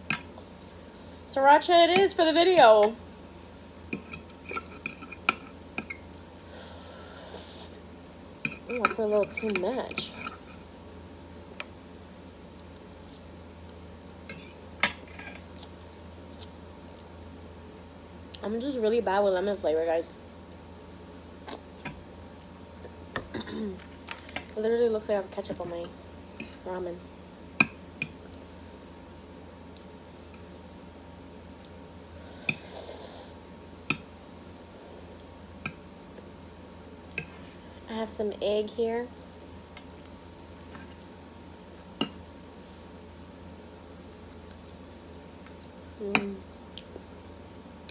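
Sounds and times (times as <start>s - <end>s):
low steady hum: 0.0s - 47.9s
utensils clinking against bowl: 8.5s - 10.6s.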